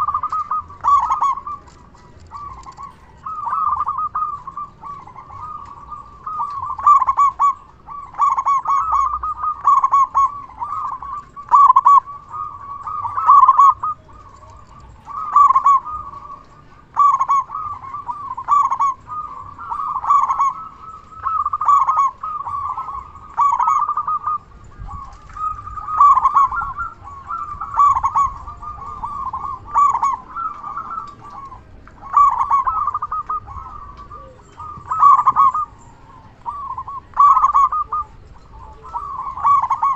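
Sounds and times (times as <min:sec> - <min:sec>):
dove cooing: 0:00.0 - 0:39.9.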